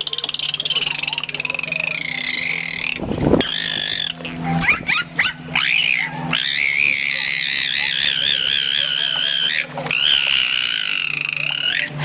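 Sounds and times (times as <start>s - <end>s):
high warbling trill: 0.0s - 12.0s.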